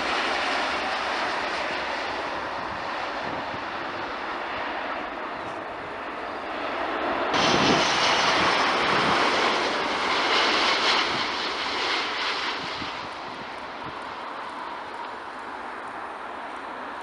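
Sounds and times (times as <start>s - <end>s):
jet engine roar: 0.0s - 17.0s.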